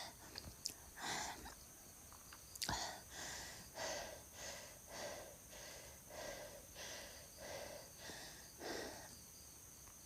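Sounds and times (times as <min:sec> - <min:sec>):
woman breathing heavily: 0:00.9 - 0:01.6, 0:02.6 - 0:09.3.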